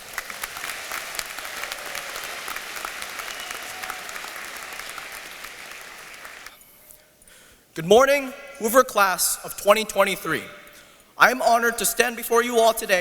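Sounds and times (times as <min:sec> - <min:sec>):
audience applauding: 0:00.0 - 0:06.6.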